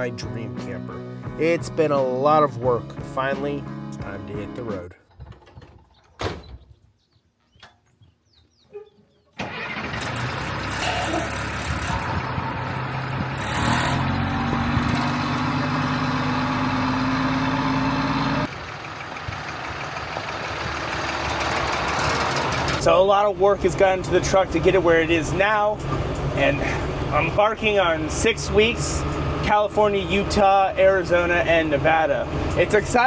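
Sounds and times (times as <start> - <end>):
diesel truck engine running: 9.4 - 33.0.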